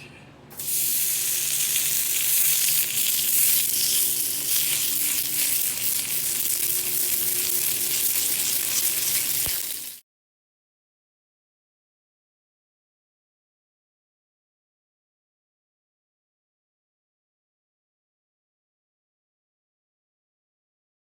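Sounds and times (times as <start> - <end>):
vegetables sizzling in a wok: 0.6 - 10.0.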